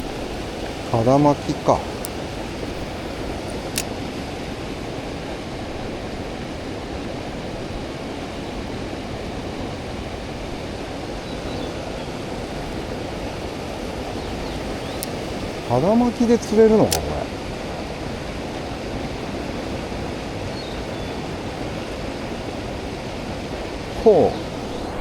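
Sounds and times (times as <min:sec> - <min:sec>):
stream rushing over rocks: 0:00.0 - 0:25.0
short click: 0:16.8 - 0:17.2.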